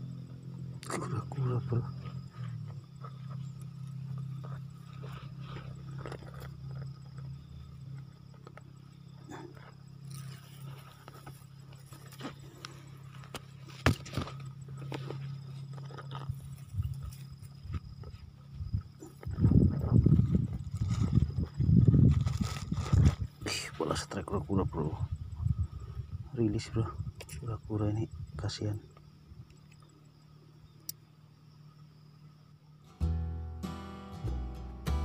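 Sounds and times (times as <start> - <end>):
steady low hum: 0.0 - 35.0.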